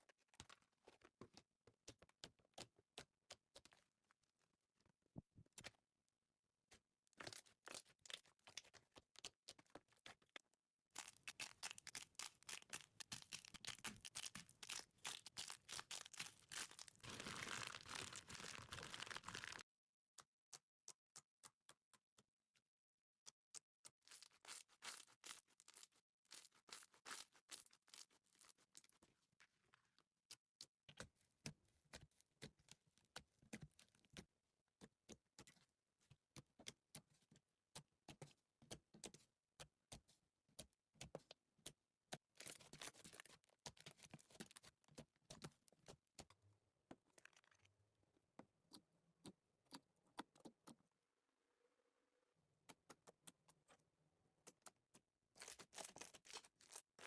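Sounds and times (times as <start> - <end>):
slime squished by hand: 11.0 - 19.6.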